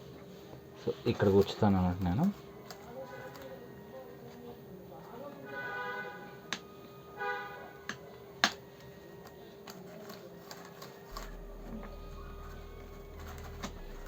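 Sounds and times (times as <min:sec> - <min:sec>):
faint steady hum: 0:00.0 - 0:14.0
small parts clicking and tapping: 0:01.3 - 0:03.6, 0:07.9 - 0:14.0.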